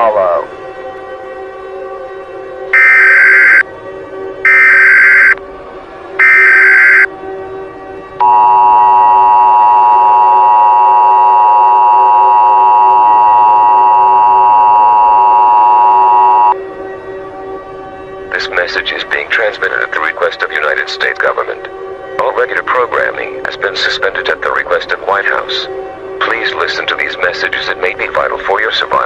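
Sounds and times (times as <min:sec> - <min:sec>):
two-tone attention signal: 0:02.8 - 0:03.6, 0:04.5 - 0:05.4, 0:06.2 - 0:07.1, 0:08.2 - 0:16.6
harsh digital data bursts: 0:06.2 - 0:07.1.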